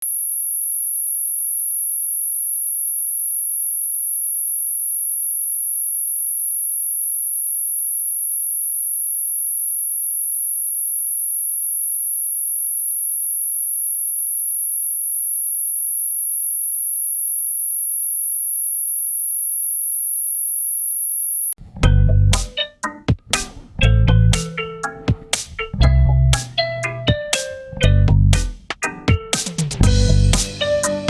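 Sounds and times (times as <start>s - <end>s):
high-pitched hiss: 0.0s - 21.6s.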